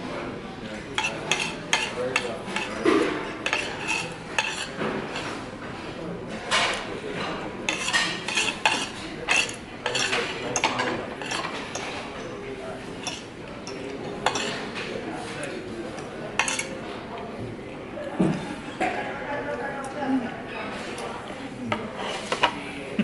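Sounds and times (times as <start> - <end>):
restaurant dining room hum: 0.0 - 23.0
cutlery clinking on plates: 0.9 - 5.4, 6.4 - 12.4, 13.0 - 16.8, 21.7 - 22.6.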